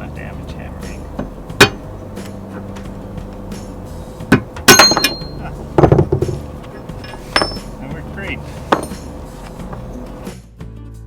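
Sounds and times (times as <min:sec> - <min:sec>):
hammer striking metal: 0:01.2 - 0:01.9, 0:03.6 - 0:08.0, 0:08.6 - 0:09.9.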